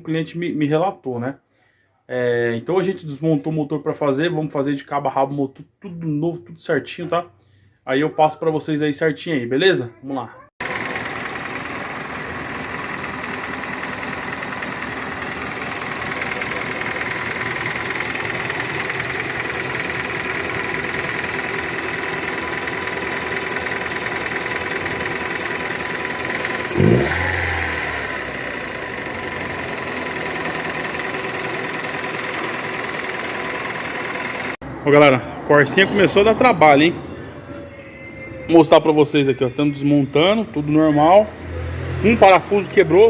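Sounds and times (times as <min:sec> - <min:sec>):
car engine idling and revving: 0:10.6 - 0:34.6, 0:40.4 - 0:43.0.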